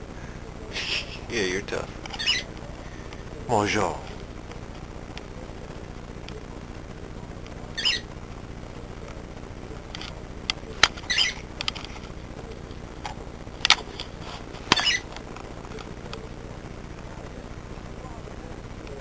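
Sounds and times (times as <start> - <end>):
cockatiel chirping: 2.2 - 2.5, 7.8 - 8.1, 11.1 - 11.4, 14.8 - 15.1.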